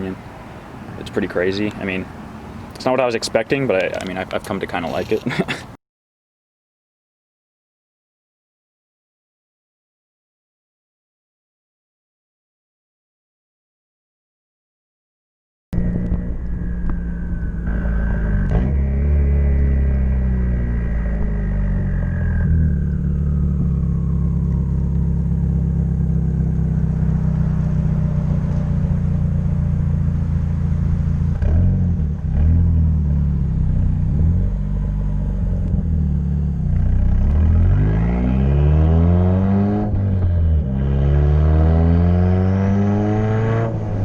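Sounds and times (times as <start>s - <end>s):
car engine revving: 15.8s - 44.0s.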